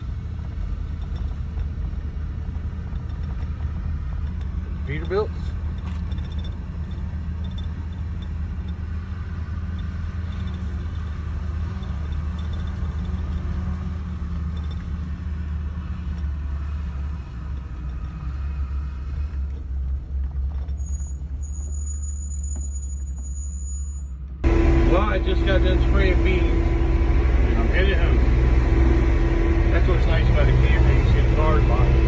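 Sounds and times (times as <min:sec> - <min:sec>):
road noise: 0:00.0 - 0:32.0
vehicle engine rumble: 0:00.0 - 0:32.0
thin high whine: 0:22.3 - 0:32.0.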